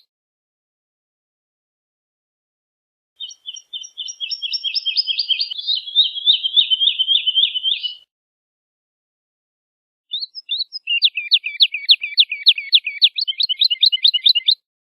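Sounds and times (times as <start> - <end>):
woodlark singing trill: 3.2 - 8.1, 10.1 - 14.6.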